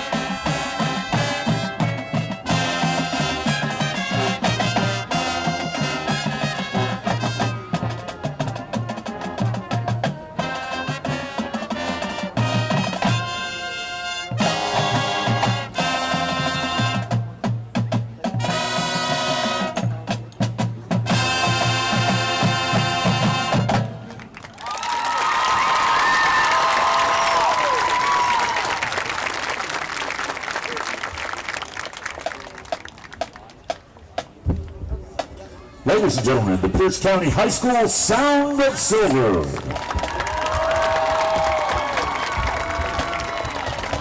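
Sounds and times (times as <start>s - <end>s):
marching band brass chords: 0.0s - 24.3s, 35.8s - 44.0s
drumline: 0.0s - 44.0s.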